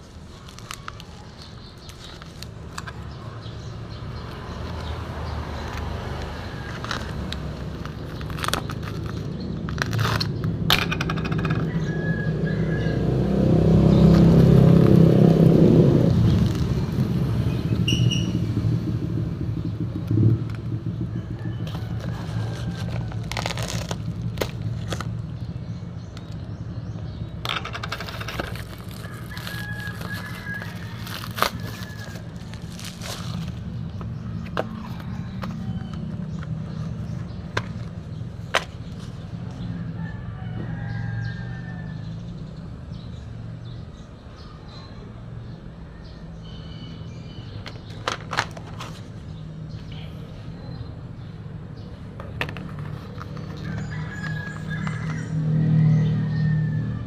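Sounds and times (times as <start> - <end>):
motor vehicle passing: 0.0 - 44.6, 45.2 - 57.0
handling clicks and scrapes: 5.6 - 11.9, 21.6 - 26.5, 27.4 - 39.7, 47.5 - 50.0, 51.8 - 55.4.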